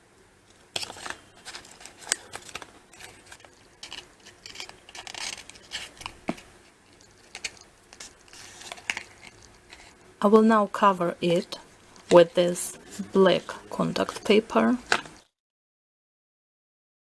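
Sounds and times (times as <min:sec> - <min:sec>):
paper clicks snips and scrapes: 0:00.7 - 0:06.5, 0:07.2 - 0:09.9.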